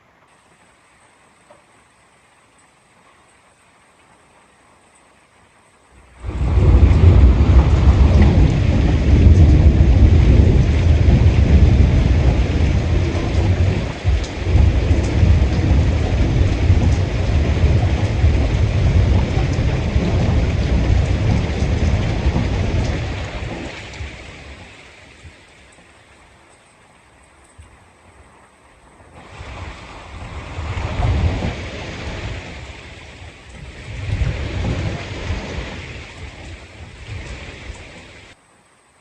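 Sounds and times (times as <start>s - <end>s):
heavy rain pouring: 0.0s - 39.0s
deep rumble: 6.0s - 24.3s, 29.2s - 32.8s, 33.5s - 38.0s.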